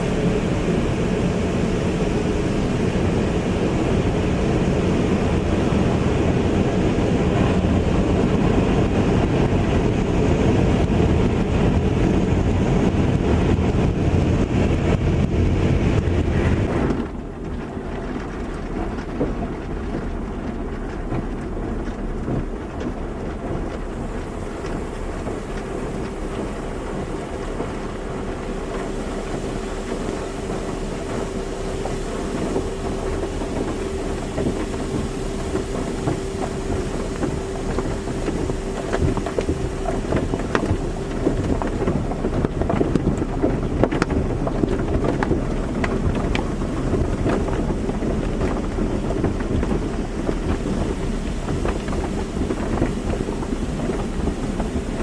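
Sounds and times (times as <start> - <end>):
equipment hum: 0.0 - 55.0
water spray rushing: 0.0 - 55.0
spray ticks and knocks: 14.9 - 55.0.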